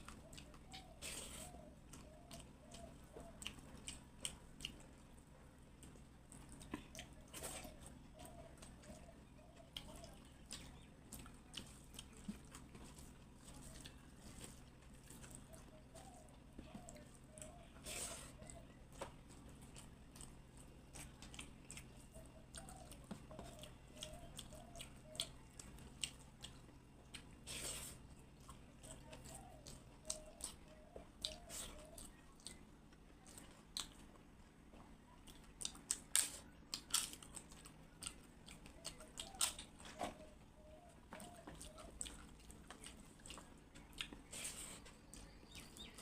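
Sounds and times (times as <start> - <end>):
person chewing food: 0.0 - 46.0
crunchy bites: 35.2 - 40.2.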